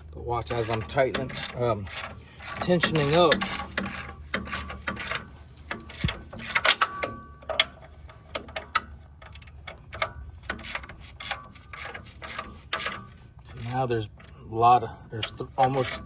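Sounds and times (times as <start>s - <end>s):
wrench ratchet clicks: 0.5s - 5.2s
metallic clinks: 5.9s - 7.8s.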